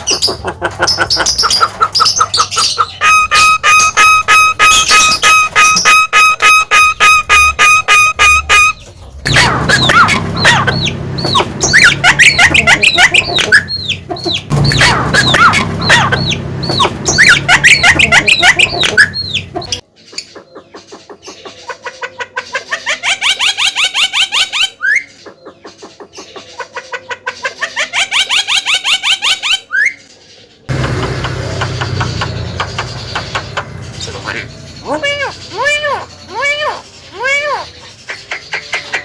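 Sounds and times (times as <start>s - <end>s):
bird calling with whistles and chatter: 1.0s - 21.6s, 27.4s - 39.0s
fast rising bird trill: 2.4s - 19.8s.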